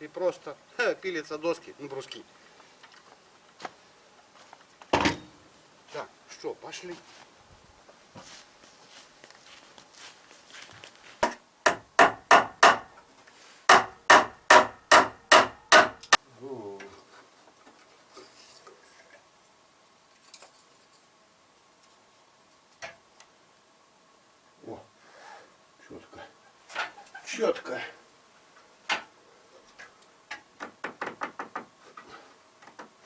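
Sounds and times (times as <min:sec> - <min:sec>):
hammer blows on wood: 0:11.2 - 0:12.9, 0:13.7 - 0:16.2.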